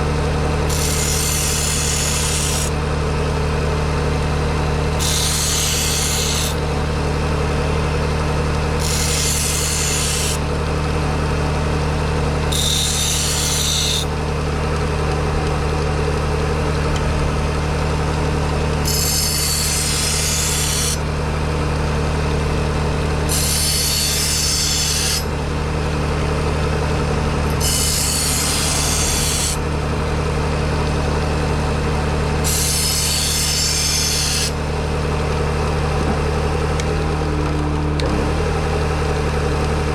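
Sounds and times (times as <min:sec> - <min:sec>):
belt sander motor hum: 0:00.0 - 0:39.9
blade grinding on sanding belt: 0:00.7 - 0:02.8, 0:05.0 - 0:06.6, 0:08.8 - 0:10.4, 0:12.5 - 0:14.1, 0:18.8 - 0:21.0, 0:23.3 - 0:25.3, 0:27.5 - 0:29.6, 0:32.4 - 0:34.6.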